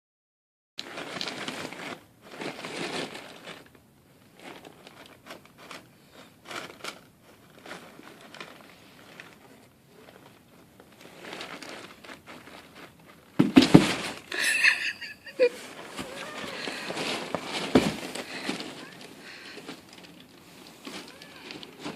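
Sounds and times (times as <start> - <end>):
cat rustling in a box: 0.8 - 14.3, 15.4 - 21.9
bump: 13.4 - 15.1.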